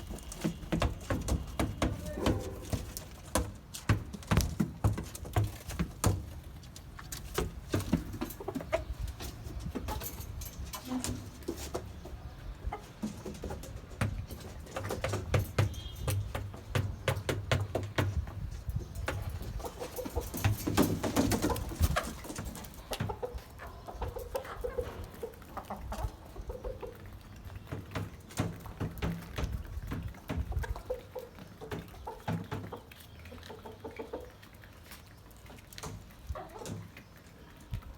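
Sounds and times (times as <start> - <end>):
sharp taps and knocks: 0.1 - 6.5, 13.1 - 18.4
hens clucking softly: 5.4 - 15.4, 18.5 - 28.7, 29.4 - 37.9.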